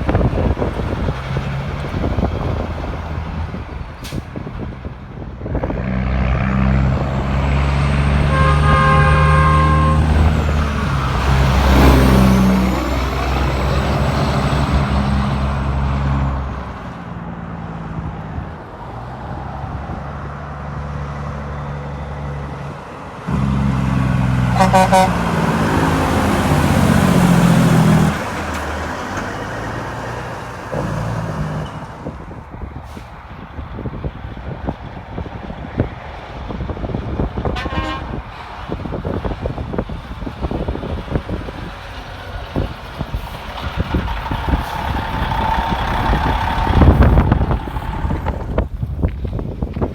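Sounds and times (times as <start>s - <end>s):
diesel truck engines passing: 0.0s - 49.9s
truck horn toots: 8.0s - 10.6s, 23.3s - 25.6s, 37.4s - 38.3s
multi-note air horn: 8.3s - 10.3s, 24.5s - 25.3s, 37.6s - 38.2s.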